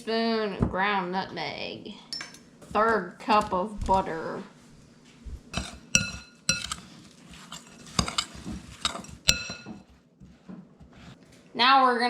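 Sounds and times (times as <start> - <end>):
metal utensil stirring in bowl: 5.5 - 10.0
utensil clinking against bowl: 5.6 - 9.9.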